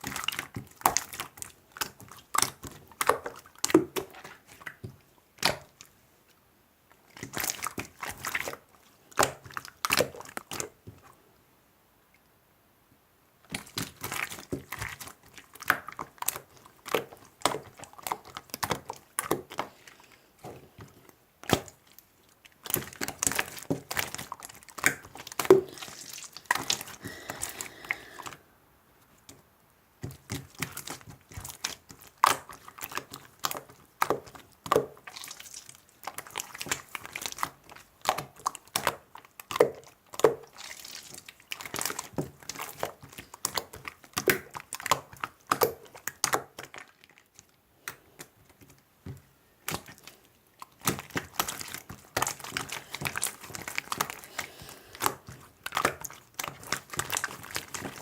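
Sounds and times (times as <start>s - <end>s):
slime squished by hand: 13.5s - 28.4s, 30.0s - 58.0s.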